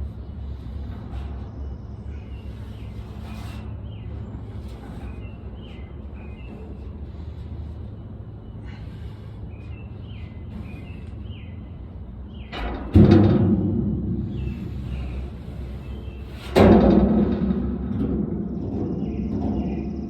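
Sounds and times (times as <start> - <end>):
low steady hum: 0.0 - 20.0
birds chirping: 0.2 - 12.8, 14.1 - 16.5, 18.2 - 20.0.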